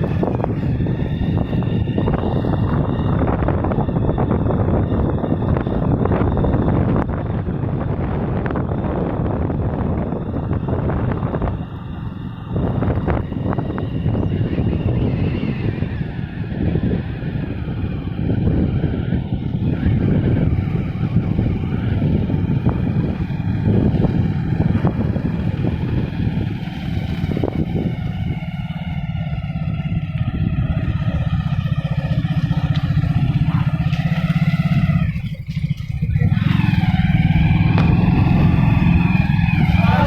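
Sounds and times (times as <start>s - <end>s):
vehicle engine running: 0.0s - 40.0s.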